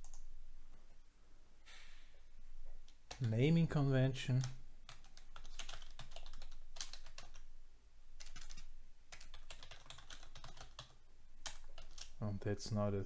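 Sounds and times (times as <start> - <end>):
computer keyboard typing: 0.0 - 0.2, 3.1 - 3.4, 4.4 - 7.4, 8.2 - 12.2.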